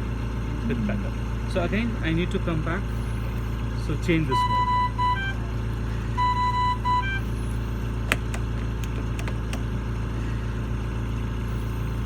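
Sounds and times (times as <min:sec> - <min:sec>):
low machine hum: 0:00.0 - 0:12.0
electronic alarm beeps: 0:04.3 - 0:05.4, 0:06.1 - 0:07.5.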